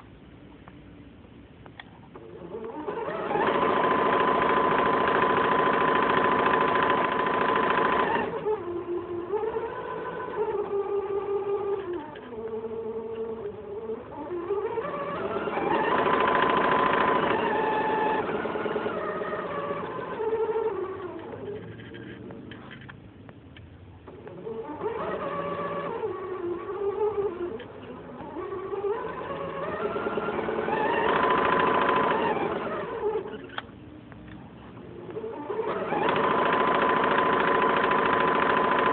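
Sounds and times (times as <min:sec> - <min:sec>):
sewing machine running: 0:02.3 - 0:12.2, 0:14.2 - 0:21.7, 0:24.3 - 0:33.4, 0:35.2 - 0:38.9.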